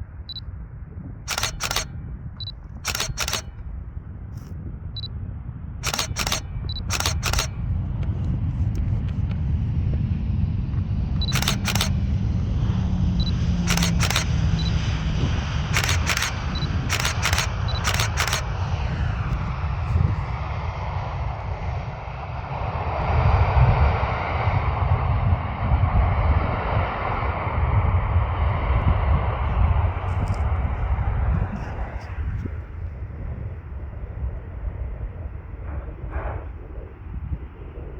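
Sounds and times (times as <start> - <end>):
airplane rumble: 0.0 - 37.9
camera shutter bursts: 1.3 - 1.9, 2.8 - 3.6, 5.8 - 7.6, 11.2 - 12.1, 13.2 - 14.8, 15.7 - 18.6.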